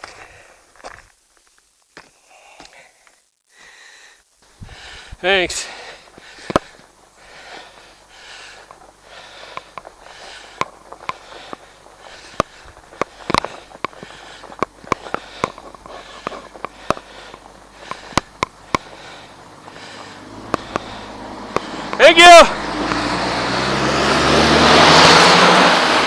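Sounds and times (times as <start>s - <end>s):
person breathing hard and sniffing: 0.0s - 0.8s, 2.2s - 22.0s
sharp clicks and ticks: 10.6s - 19.0s.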